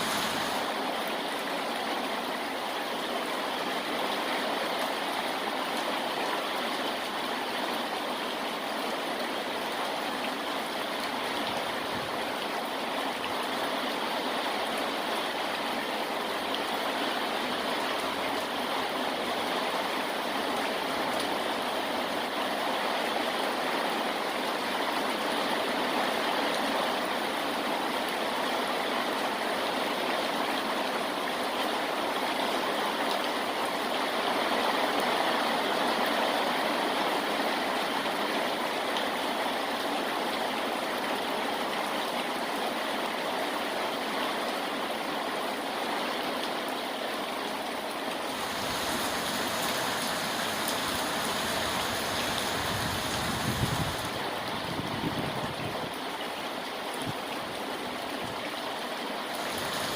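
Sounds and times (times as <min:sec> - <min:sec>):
steady rainfall: 0:00.0 - 0:59.9.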